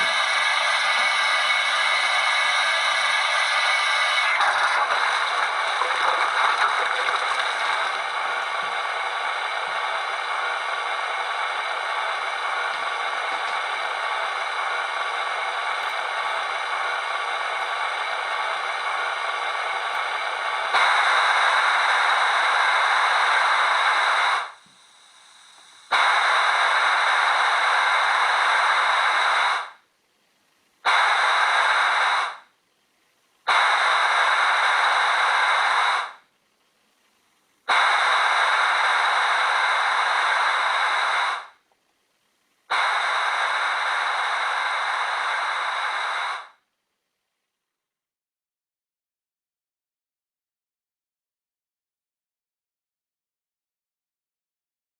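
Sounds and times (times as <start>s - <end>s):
steam hiss from small speaker: 0.0s - 29.8s, 30.8s - 32.5s, 33.4s - 36.3s, 37.6s - 41.6s, 42.6s - 46.7s.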